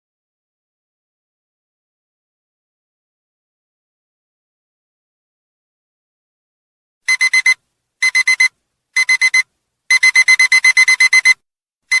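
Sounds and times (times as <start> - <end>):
alarm clock beeping: 7.1 - 12.0.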